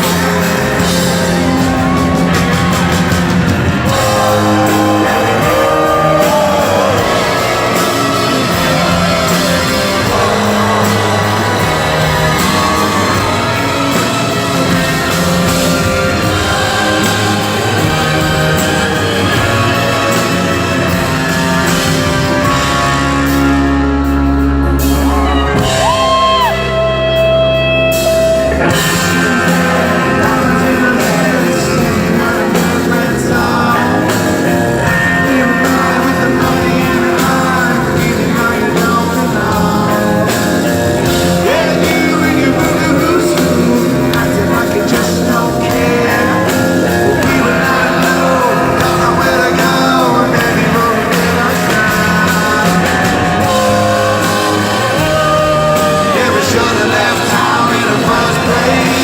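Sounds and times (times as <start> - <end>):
drums: 0.0 - 59.0
person singing: 0.0 - 59.0
sustained guitar chords: 0.0 - 59.0.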